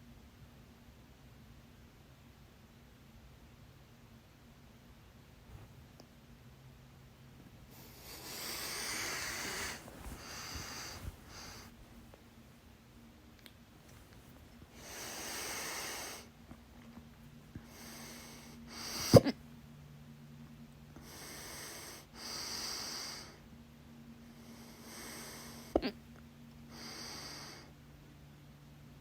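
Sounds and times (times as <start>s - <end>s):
breathing in and out: 7.7s - 12.2s, 13.9s - 16.4s, 17.6s - 19.3s, 21.0s - 23.4s, 24.3s - 25.9s, 26.7s - 27.7s
woman hiccupping: 25.8s - 26.0s.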